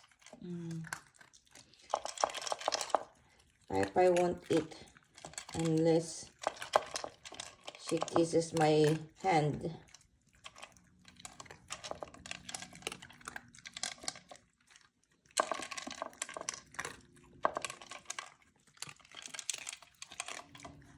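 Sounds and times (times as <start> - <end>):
puppies crunching food: 0.0 - 20.9.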